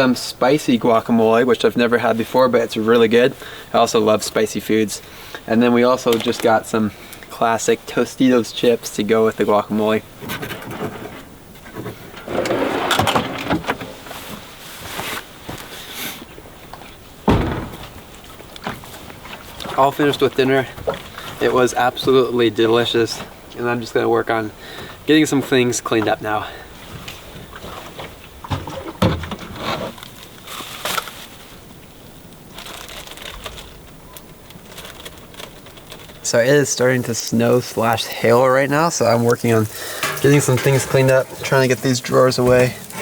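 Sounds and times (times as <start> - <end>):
rustling: 4.2 - 43.0
light clicks and knocks: 15.5 - 23.9
loud dull thump: 17.2 - 18.1.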